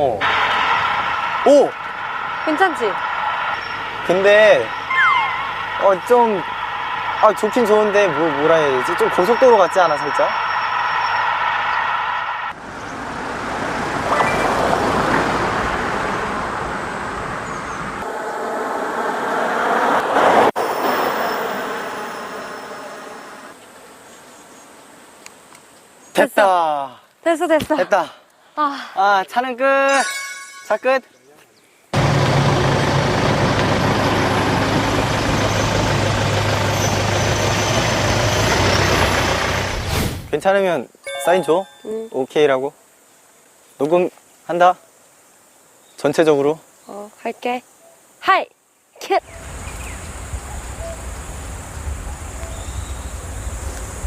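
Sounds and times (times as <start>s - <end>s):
road and wind noise: 0.0s - 26.2s, 30.8s - 41.0s, 49.2s - 54.0s
low engine hum: 32.0s - 39.9s.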